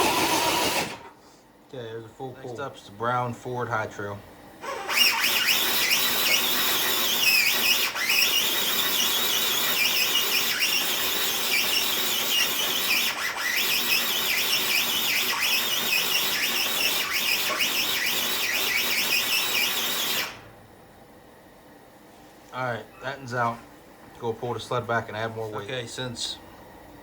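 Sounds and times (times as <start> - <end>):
electric motor whining under load: 0.0 - 1.1, 4.6 - 20.5.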